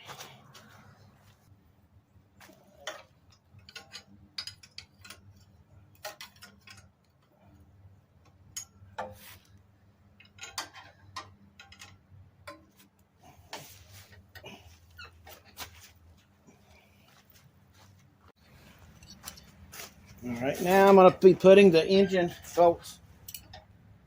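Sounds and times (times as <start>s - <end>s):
metal tools clicking and clinking: 2.8s - 7.3s, 10.2s - 12.7s, 18.6s - 19.6s, 23.2s - 23.7s.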